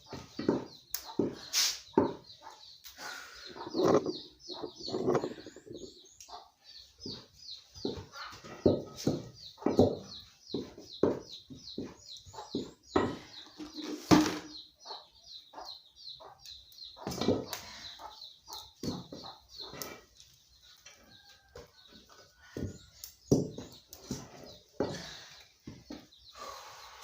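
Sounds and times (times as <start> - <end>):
bird chirping: 0.0 - 27.0
spoon knocking and scraping pot: 3.6 - 6.0.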